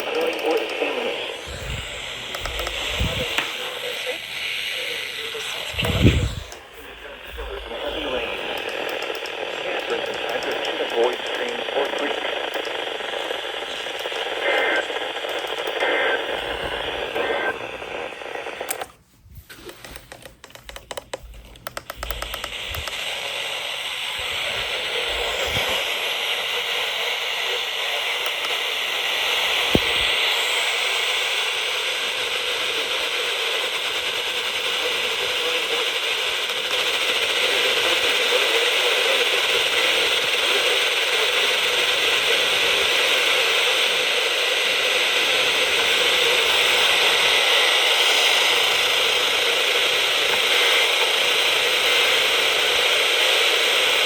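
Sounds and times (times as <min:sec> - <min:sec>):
crackling clicks: 0:00.0 - 0:03.7, 0:05.4 - 0:19.0, 0:19.6 - 0:23.2
radio static hiss: 0:00.0 - 0:54.0.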